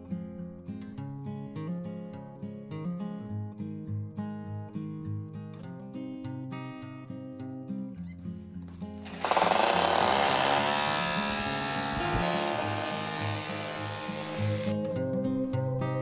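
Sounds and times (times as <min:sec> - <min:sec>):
acoustic guitar music: 0:00.0 - 0:16.0
power tool running: 0:09.0 - 0:14.8.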